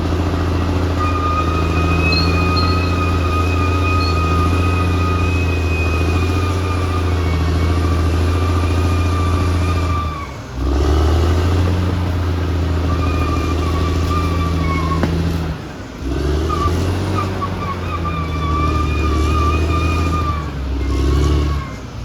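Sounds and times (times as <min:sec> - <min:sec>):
bulldozer diesel engine drone: 0:00.0 - 0:22.0
high falling whine: 0:01.4 - 0:07.0.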